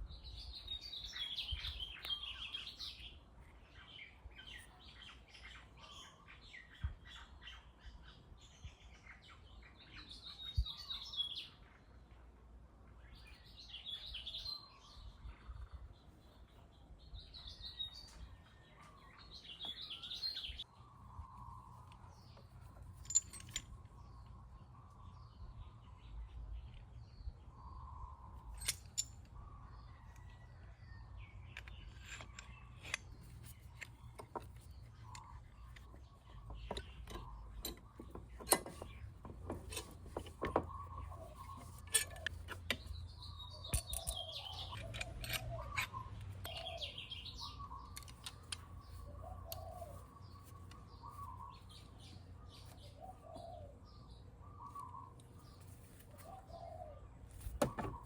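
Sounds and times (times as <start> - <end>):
birds chirping: 0.0 - 58.0
hand tools clinking: 22.5 - 24.1, 28.5 - 29.4, 31.5 - 52.9.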